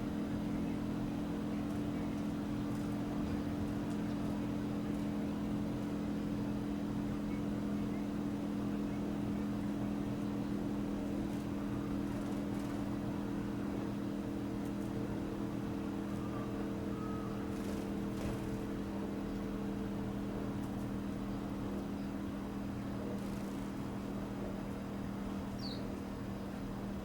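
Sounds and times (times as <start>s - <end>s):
steady low machine hum: 0.0s - 27.0s.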